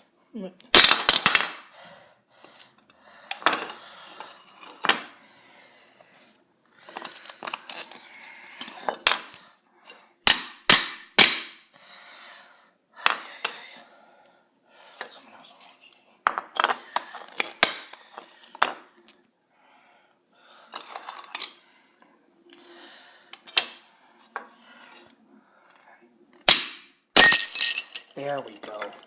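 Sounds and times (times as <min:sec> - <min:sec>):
ceramic pieces scraping: 0:06.8 - 0:10.0, 0:16.3 - 0:19.0, 0:20.7 - 0:21.6
ceramic pieces clinking: 0:27.2 - 0:29.0.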